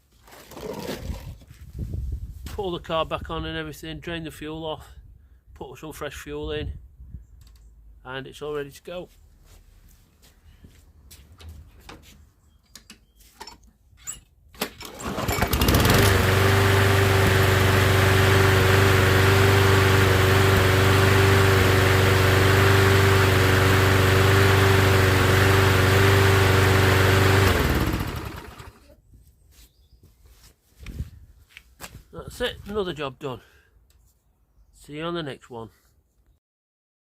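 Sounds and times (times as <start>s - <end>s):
lawnmower engine running: 14.6s - 28.8s.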